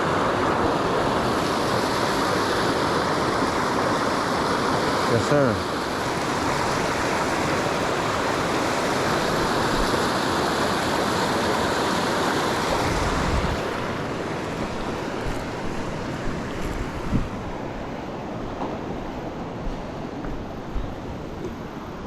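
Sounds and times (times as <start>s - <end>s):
river water rushing: 0.0s - 22.0s.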